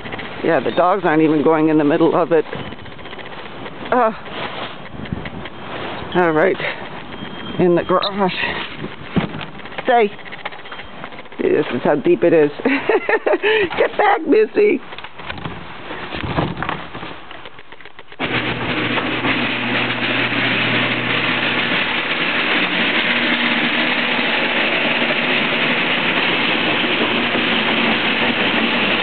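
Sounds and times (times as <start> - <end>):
handling noise: 0.0 - 12.3, 13.1 - 29.0
garage door opener motor humming: 18.2 - 29.0.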